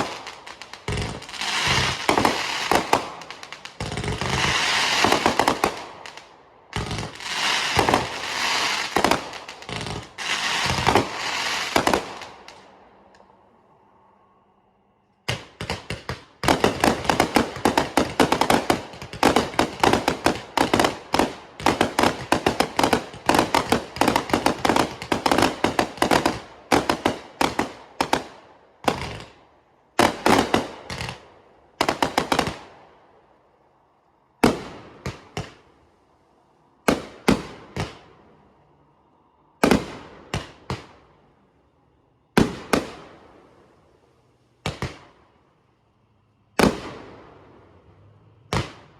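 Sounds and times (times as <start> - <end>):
fireworks banging: 0.0 - 12.7, 15.2 - 29.4, 30.0 - 32.7.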